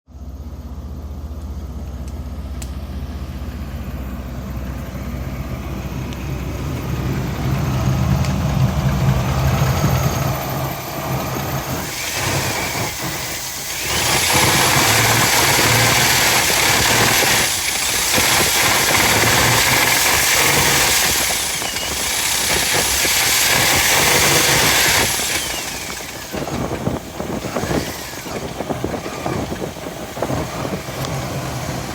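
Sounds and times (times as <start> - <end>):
engine running: 0.1 - 31.9
loud rushing hiss: 9.4 - 31.9.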